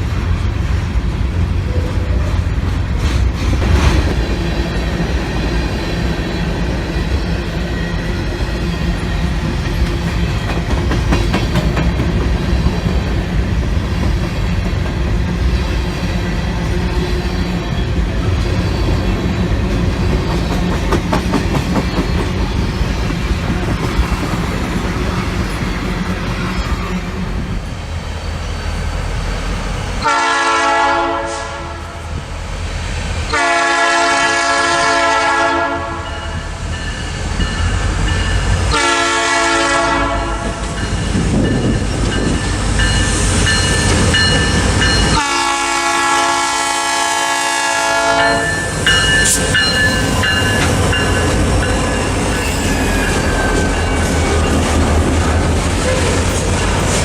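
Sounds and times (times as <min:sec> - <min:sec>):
multi-chime train horn blasts: 0:30.0 - 0:32.1, 0:33.3 - 0:36.6, 0:38.6 - 0:40.6, 0:43.7 - 0:51.3.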